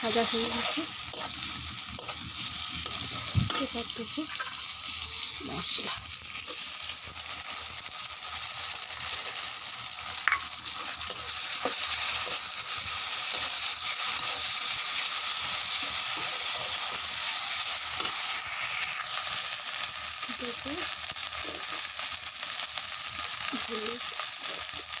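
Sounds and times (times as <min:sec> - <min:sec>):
onions sizzling in hot oil: 0:00.0 - 0:25.0
spatula scraping pan: 0:00.2 - 0:04.6.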